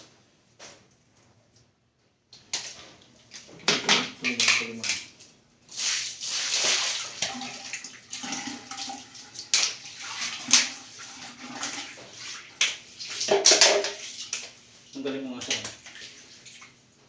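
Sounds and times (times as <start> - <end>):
shower water spraying and splashing: 5.7 - 16.7.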